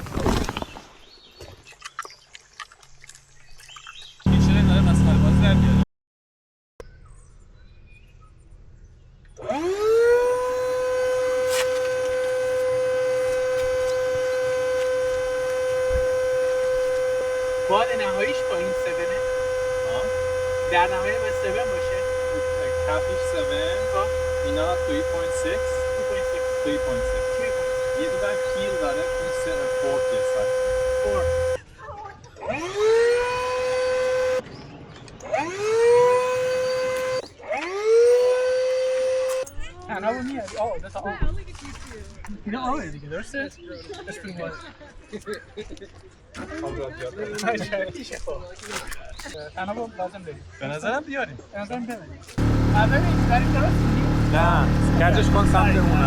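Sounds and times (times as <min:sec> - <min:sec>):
small electric motor whining: 0:04.3 - 0:05.8, 0:09.4 - 0:31.6, 0:32.5 - 0:34.4, 0:35.3 - 0:39.4, 0:52.4 - 0:56.0.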